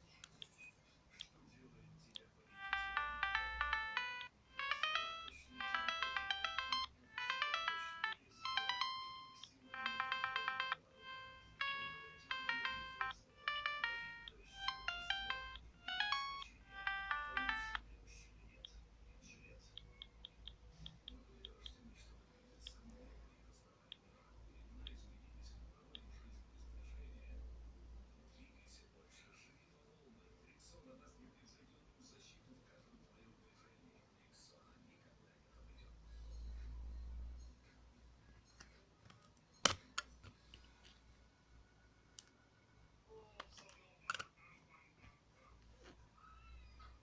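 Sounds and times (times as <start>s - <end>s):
phone ringtone melody: 2.5s - 17.9s.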